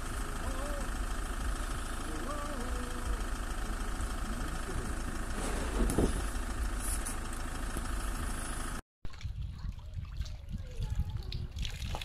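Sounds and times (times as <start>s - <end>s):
vehicle engine idling: 0.0s - 8.8s.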